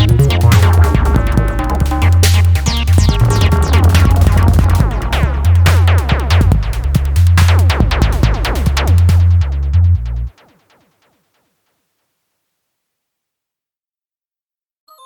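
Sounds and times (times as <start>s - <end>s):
electronic music with drum-machine beat: 0.0s - 10.5s.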